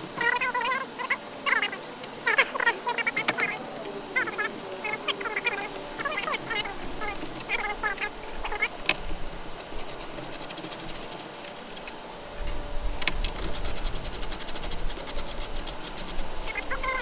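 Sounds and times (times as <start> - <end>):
hand tool rapid clicks: 9.8 - 11.9, 13.4 - 16.8.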